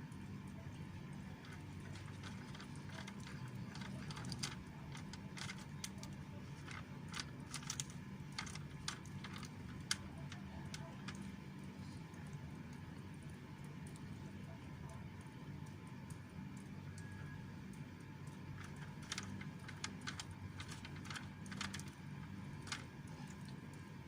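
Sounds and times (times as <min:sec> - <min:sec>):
steady low hum: 0:00.0 - 0:24.0
cat crunching food: 0:01.0 - 0:11.5, 0:18.3 - 0:23.8.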